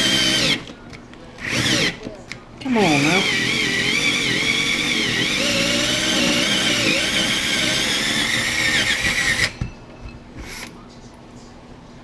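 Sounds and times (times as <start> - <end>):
power drill cutting through wood: 0.0 - 0.6, 1.4 - 2.0, 2.9 - 9.5.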